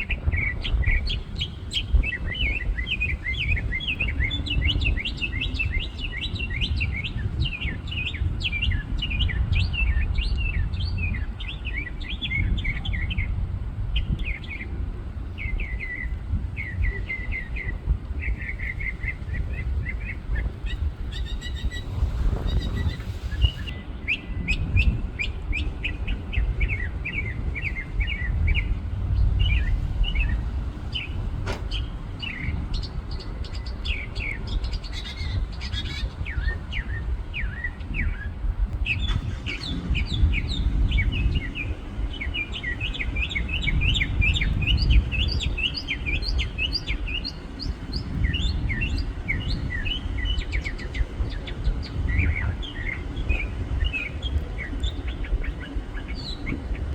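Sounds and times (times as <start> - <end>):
songbird chirping song: 0.0 - 56.9
low rumble: 20.3 - 23.9.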